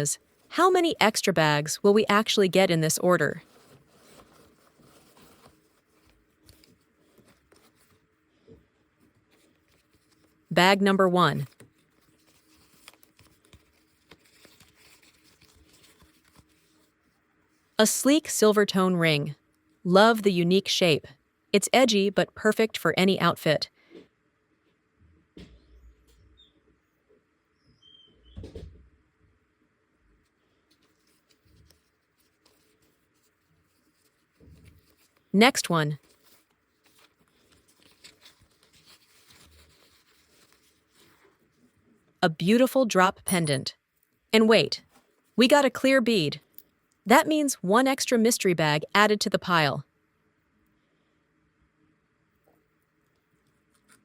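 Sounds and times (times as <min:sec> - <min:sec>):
packaging rustling: 0:03.4 - 0:08.1, 0:11.5 - 0:17.0, 0:36.0 - 0:41.7
faint soft rustles: 0:03.4 - 0:10.5, 0:30.2 - 0:35.3, 0:36.0 - 0:42.2.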